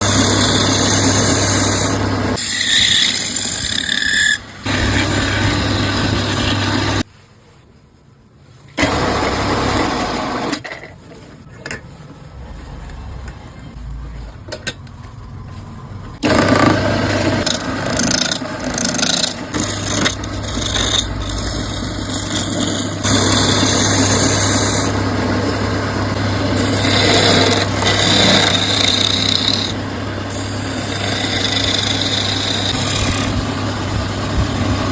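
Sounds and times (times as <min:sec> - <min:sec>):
electric power tool shaping wood: 0:00.0 - 0:07.0, 0:16.2 - 0:34.9
tool squealing: 0:00.0 - 0:07.0, 0:16.2 - 0:25.6, 0:26.4 - 0:33.4.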